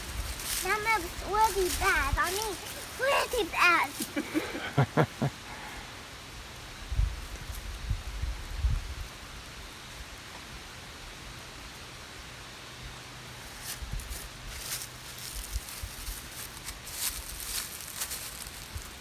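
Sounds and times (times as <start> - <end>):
campfire crackling: 0.0 - 6.7, 13.2 - 19.0.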